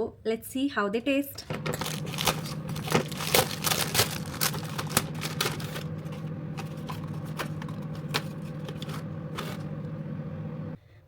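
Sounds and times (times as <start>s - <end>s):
packaging clicks and rustles: 1.4s - 10.0s
low hum: 1.4s - 10.8s.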